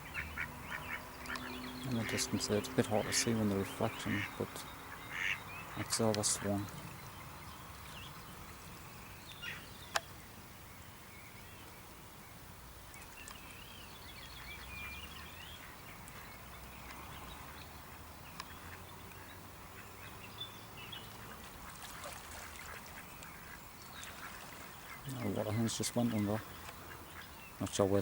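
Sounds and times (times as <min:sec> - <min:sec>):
ducks quacking: 0:00.0 - 0:06.7, 0:21.2 - 0:28.0
outdoor background noise: 0:00.0 - 0:28.0
pond birds calling: 0:00.0 - 0:28.0.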